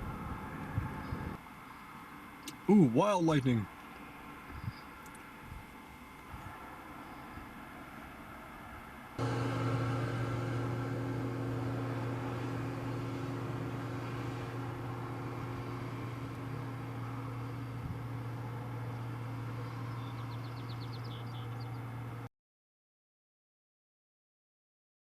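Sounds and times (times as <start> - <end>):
vehicle idling hum: 9.2 - 22.3.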